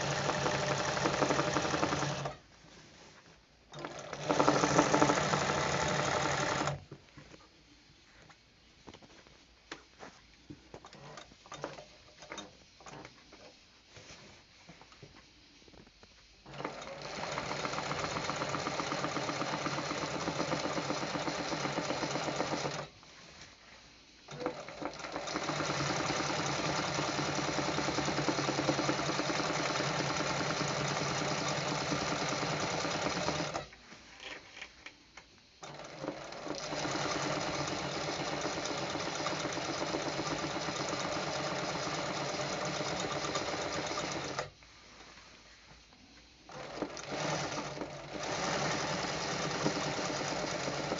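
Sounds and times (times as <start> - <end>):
sewing machine stitching: 0.0 - 2.4, 3.7 - 6.8, 16.4 - 22.9, 24.3 - 33.7, 35.6 - 44.6, 46.5 - 50.9.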